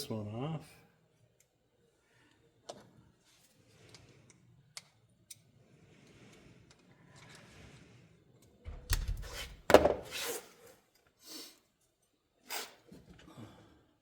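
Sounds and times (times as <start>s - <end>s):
sharp knocks and clatters: 8.7s - 10.1s.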